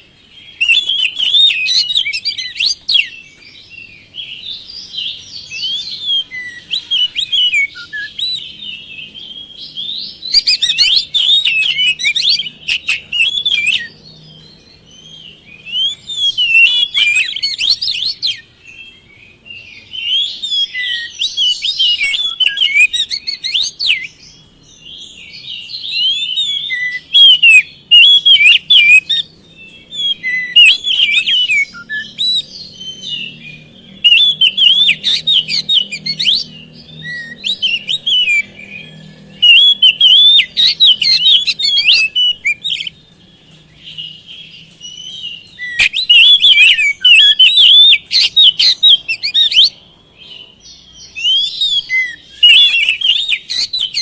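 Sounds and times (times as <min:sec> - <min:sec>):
bird singing whistles and chirps: 0:00.0 - 0:54.0.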